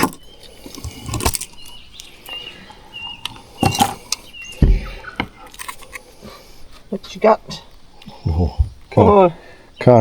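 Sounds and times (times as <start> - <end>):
bird calling high repeated notes: 4.4 - 5.3.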